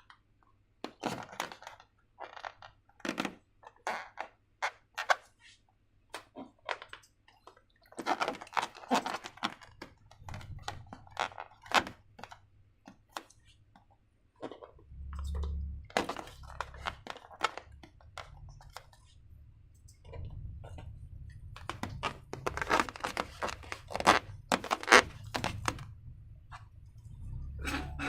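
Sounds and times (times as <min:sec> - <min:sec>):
balloon crinkles: 0:07.9 - 0:12.4, 0:15.9 - 0:19.2, 0:21.4 - 0:25.9
low rumble: 0:14.8 - 0:17.0, 0:17.6 - 0:28.0
sticky slime crackles: 0:21.2 - 0:25.9.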